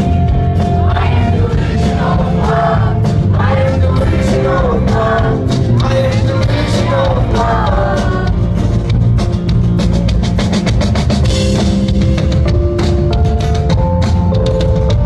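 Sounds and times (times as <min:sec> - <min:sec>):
bass guitar: 0:00.0 - 0:15.0
rapid drumming: 0:00.0 - 0:15.0.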